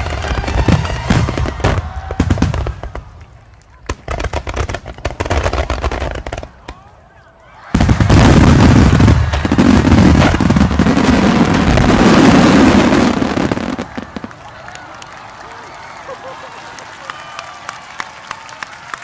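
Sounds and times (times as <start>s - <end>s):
firework crackles: 0.0s - 6.7s, 7.8s - 16.9s
firework bursts: 7.8s - 14.4s.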